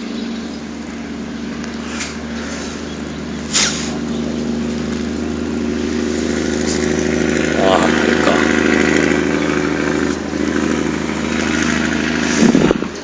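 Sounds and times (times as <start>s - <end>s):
small engine droning: 0.0s - 13.0s.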